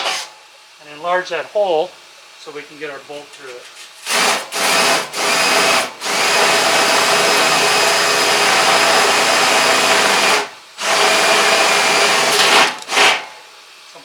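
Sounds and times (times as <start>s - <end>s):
power drill cutting steel: 4.0s - 13.3s.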